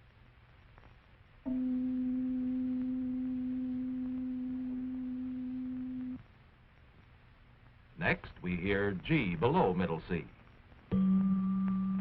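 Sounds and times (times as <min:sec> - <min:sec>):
steady pure tone: 0:01.4 - 0:06.2, 0:10.9 - 0:12.0.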